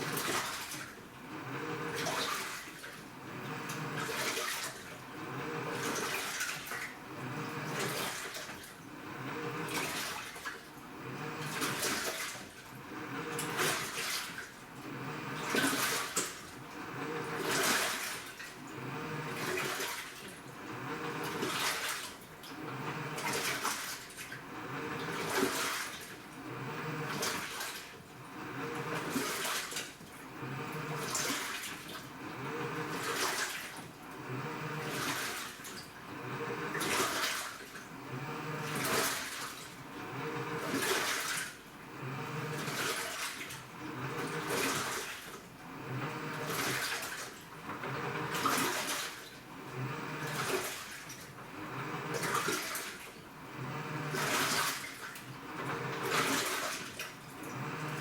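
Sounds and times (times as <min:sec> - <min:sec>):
water sloshing in washing machine: 0:00.0 - 0:58.0
low motor hum: 0:01.1 - 0:02.1, 0:03.1 - 0:04.1, 0:05.0 - 0:06.0, 0:07.0 - 0:07.9, 0:08.9 - 0:09.8, 0:10.8 - 0:11.8, 0:12.7 - 0:14.0, 0:14.7 - 0:15.8, 0:16.5 - 0:17.7, 0:18.6 - 0:19.5, 0:20.5 - 0:21.5, 0:22.5 - 0:23.4, 0:24.5 - 0:25.6, 0:26.3 - 0:27.2, 0:28.2 - 0:29.2, 0:30.2 - 0:31.2, 0:32.0 - 0:33.2, 0:33.9 - 0:35.1, 0:36.0 - 0:36.9, 0:37.9 - 0:39.0, 0:39.8 - 0:40.8, 0:41.8 - 0:42.8, 0:43.7 - 0:44.8, 0:45.6 - 0:46.7, 0:47.6 - 0:48.6, 0:49.5 - 0:50.7, 0:51.4 - 0:52.4, 0:53.4 - 0:54.5, 0:55.4 - 0:56.4, 0:57.3 - 0:58.0.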